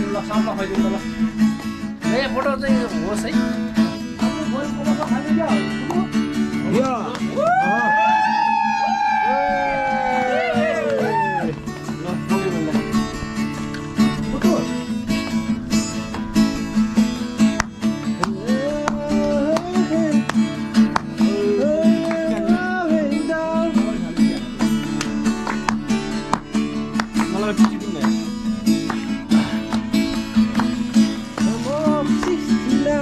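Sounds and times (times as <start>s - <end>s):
strummed acoustic guitar: 0.0s - 33.0s
bending melody line: 9.4s - 33.0s.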